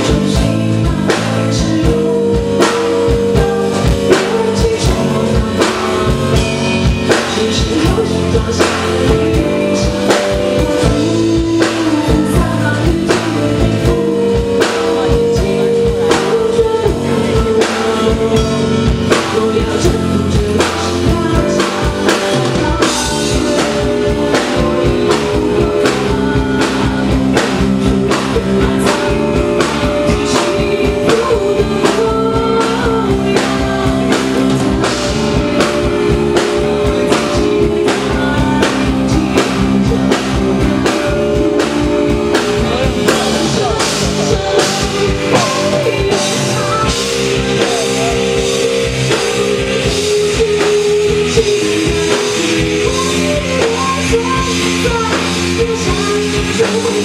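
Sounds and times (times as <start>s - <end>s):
live rock band playing: 0.0s - 57.0s.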